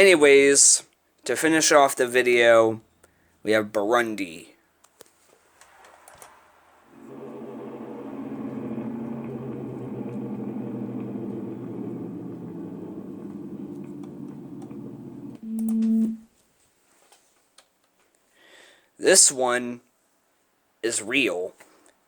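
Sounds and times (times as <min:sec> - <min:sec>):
droning siren rumble: 0:06.9 - 0:16.2
loud single tone: 0:15.4 - 0:16.3.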